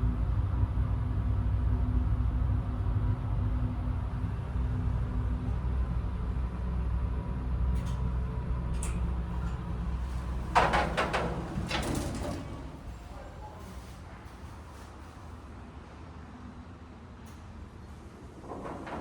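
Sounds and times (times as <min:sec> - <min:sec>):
elevator low rumble: 0:00.0 - 0:19.0
elevator doors rattling open: 0:07.8 - 0:13.9, 0:18.1 - 0:19.0.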